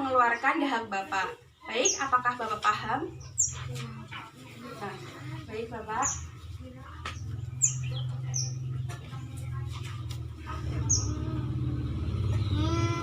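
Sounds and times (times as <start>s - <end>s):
small bird chirping: 3.1s - 4.4s, 6.0s - 13.0s.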